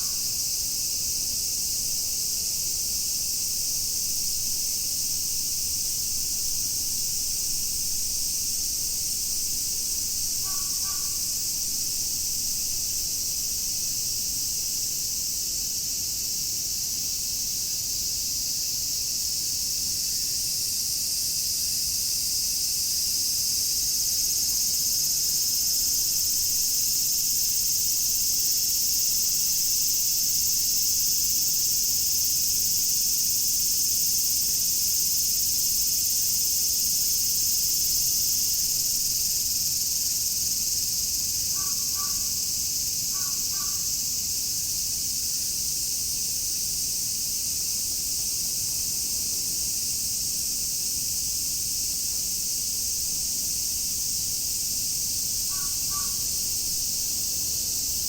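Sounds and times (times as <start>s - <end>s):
cicadas chorus: 0.0s - 58.0s
crow cawing: 10.4s - 11.3s, 41.6s - 42.3s, 43.1s - 43.8s, 55.5s - 56.3s.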